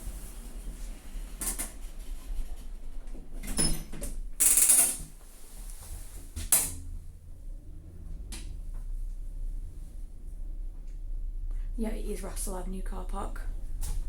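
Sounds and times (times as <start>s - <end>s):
lift doors closing with clunks: 2.6s - 5.3s
lift machinery humming: 5.2s - 14.0s.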